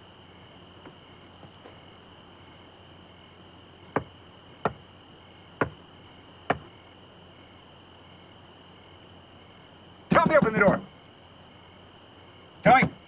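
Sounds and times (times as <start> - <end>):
crickets chirping: 0.0 - 13.0
knocks on a door: 3.9 - 4.8, 6.5 - 6.7.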